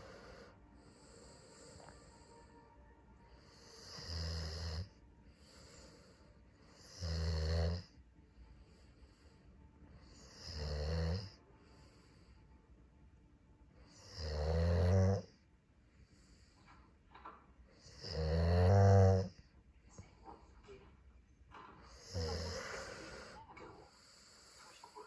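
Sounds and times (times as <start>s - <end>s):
deep snoring: 3.5s - 5.0s, 6.7s - 7.9s, 10.1s - 11.4s, 13.9s - 15.4s, 17.8s - 19.4s, 22.0s - 23.4s.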